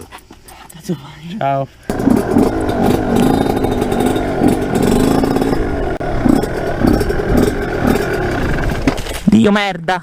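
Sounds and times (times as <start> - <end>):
two-stroke engine revving: 1.9 - 9.0.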